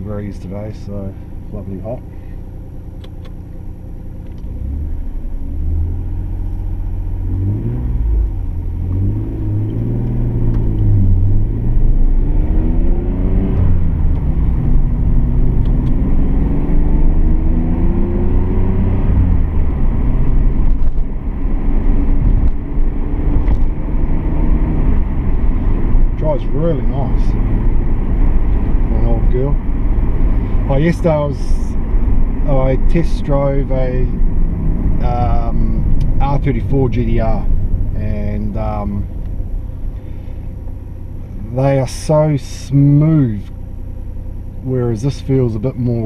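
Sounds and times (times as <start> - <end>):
car engine revving through gears: 4.2 - 40.5.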